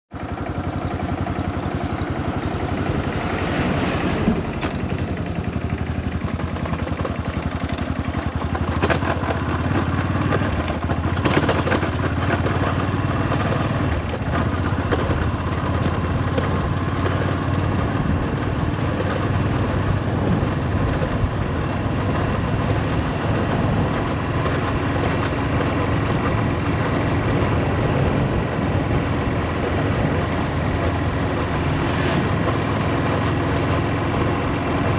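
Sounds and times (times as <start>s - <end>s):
motorcycle engine running: 0.1s - 34.9s.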